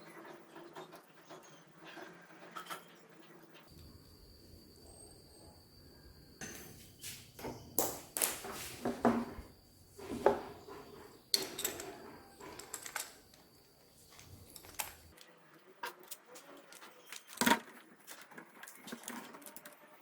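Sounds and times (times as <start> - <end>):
hard objects clicking and knocking: 6.4 - 15.1.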